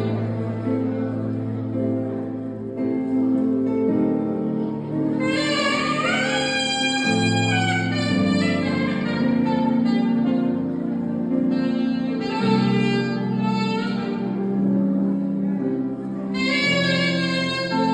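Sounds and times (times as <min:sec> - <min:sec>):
saxophone slow melody: 0:00.0 - 0:17.9.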